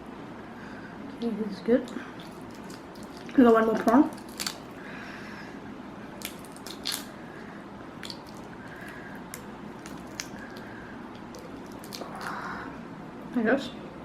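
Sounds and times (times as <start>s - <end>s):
wet eating sounds: 1.9s - 5.0s, 6.1s - 12.8s
prawn shell cracking: 2.2s - 4.8s, 6.2s - 7.2s, 8.0s - 12.4s.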